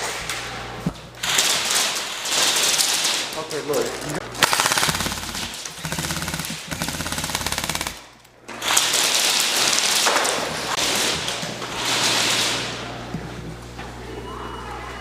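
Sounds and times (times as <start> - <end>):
electric guns firing on full auto: 1.2 - 12.9.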